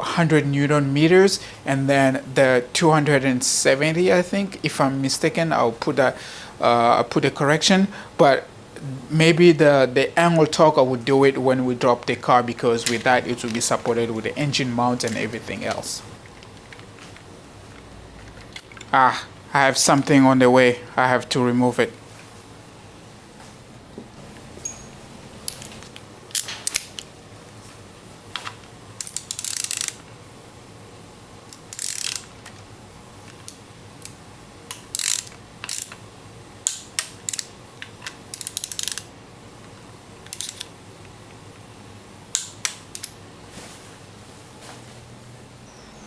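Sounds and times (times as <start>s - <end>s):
metallic clinks of tools: 18.4s - 18.9s, 24.6s - 25.7s
ratchet wrench clicking: 26.3s - 27.0s, 29.0s - 30.0s, 31.5s - 32.4s, 33.3s - 36.0s, 36.6s - 39.1s, 40.2s - 40.7s, 42.3s - 43.2s.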